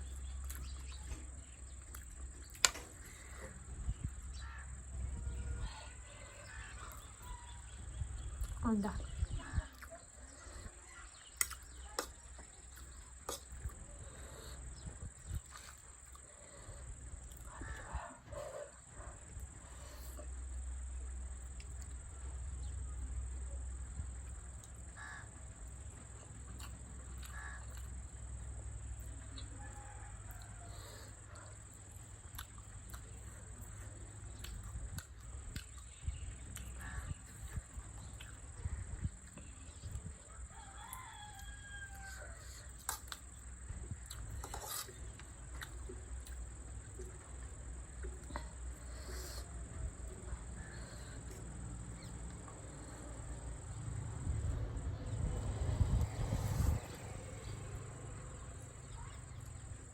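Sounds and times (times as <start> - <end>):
rooster crowing: 29.5 - 31.1, 40.3 - 42.6.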